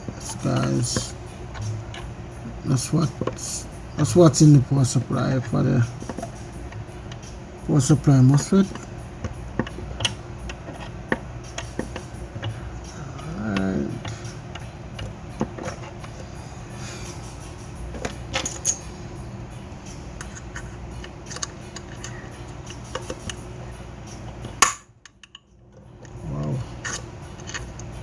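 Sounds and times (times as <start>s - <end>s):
steady low hum: 0.0s - 28.0s
metal tools clinking: 18.0s - 19.0s.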